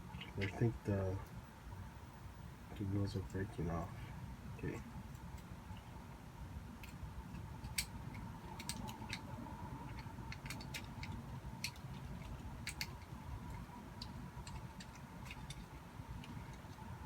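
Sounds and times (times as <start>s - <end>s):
faint low hum: 0.0s - 17.0s
toy truck clicks and taps: 6.8s - 9.3s, 9.9s - 16.8s.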